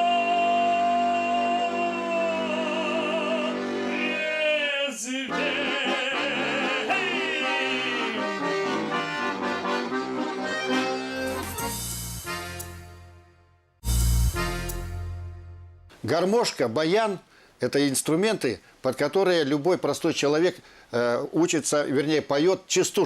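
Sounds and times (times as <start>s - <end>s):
man singing with vibrato: 0.0s - 8.8s
button accordion playing: 1.7s - 4.5s, 5.3s - 15.9s.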